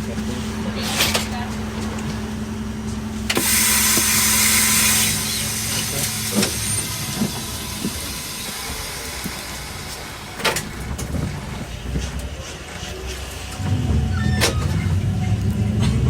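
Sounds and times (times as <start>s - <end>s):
bus cabin rumble: 0.0s - 16.0s
compressed air hiss: 3.4s - 10.0s.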